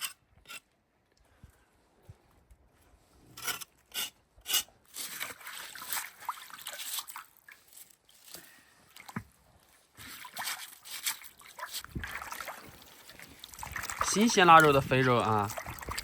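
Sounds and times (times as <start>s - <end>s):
water splashing and sloshing: 4.8s - 16.0s.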